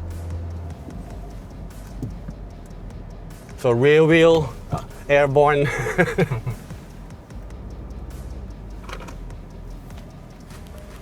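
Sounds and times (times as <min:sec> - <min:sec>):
background music: 0:00.0 - 0:11.0
low steady rumble: 0:00.0 - 0:11.0.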